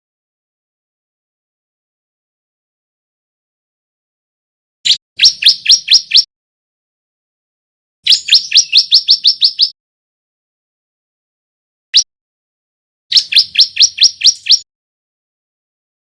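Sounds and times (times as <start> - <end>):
bird singing sharp rising chirps: 4.9 - 6.3, 8.1 - 9.8, 13.1 - 14.7.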